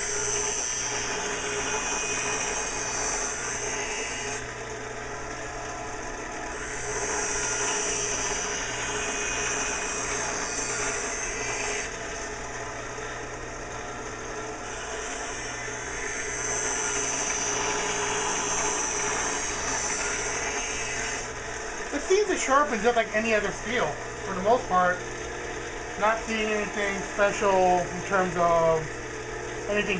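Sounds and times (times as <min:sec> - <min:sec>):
grinding wheel sharpening skate blade: 0:00.0 - 0:04.5, 0:06.5 - 0:12.3, 0:14.6 - 0:23.0.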